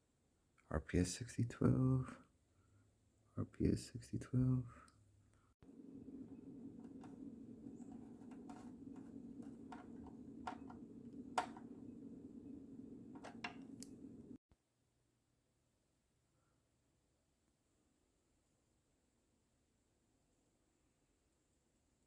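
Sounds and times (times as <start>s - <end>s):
steady low hum: 0.8s - 14.4s
clicks and taps of tools: 6.8s - 11.8s, 13.1s - 14.0s.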